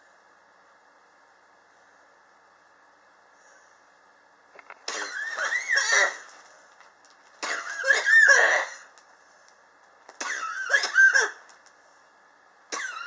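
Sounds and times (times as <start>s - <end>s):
person coughing: 4.9s - 6.3s, 7.4s - 8.9s, 10.2s - 11.4s, 12.7s - 13.0s.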